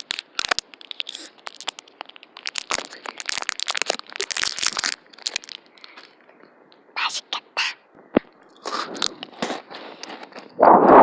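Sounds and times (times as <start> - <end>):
plastic wrapper crinkling and tearing: 0.0 - 6.4, 8.5 - 10.5.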